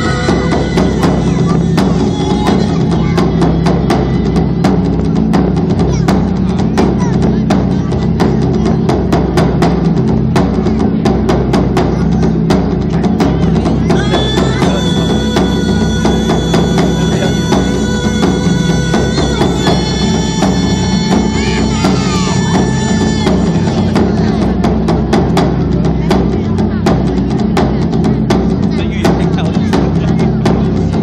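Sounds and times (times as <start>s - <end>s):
sustained held tones: 0.0s - 3.0s
music with quick drumbeat: 0.0s - 31.0s.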